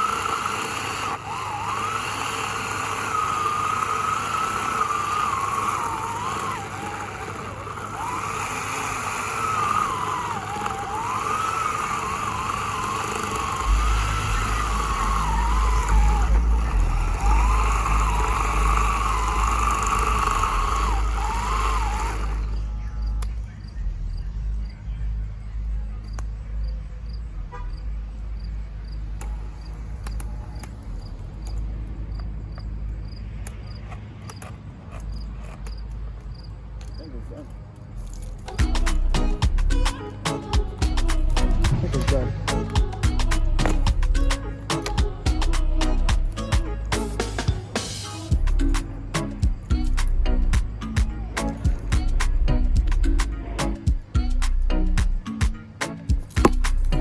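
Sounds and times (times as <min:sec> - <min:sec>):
electric chainsaw cutting wood: 0:00.0 - 0:22.7, 0:38.1 - 0:50.2, 0:56.4 - 0:57.0
crickets chirping: 0:00.0 - 0:57.0.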